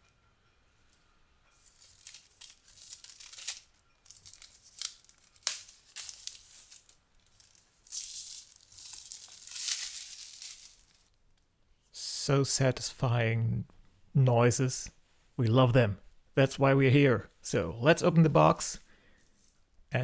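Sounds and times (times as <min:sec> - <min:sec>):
tear strips ripping off box: 0:01.8 - 0:07.0, 0:07.9 - 0:11.1.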